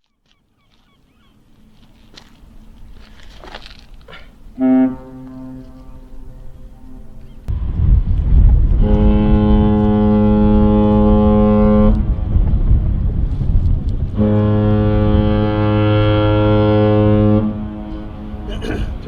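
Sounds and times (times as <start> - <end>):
deep ship's horn blasts: 4.6 - 13.0, 13.9 - 19.0
wind rumble on microphone: 4.9 - 19.0.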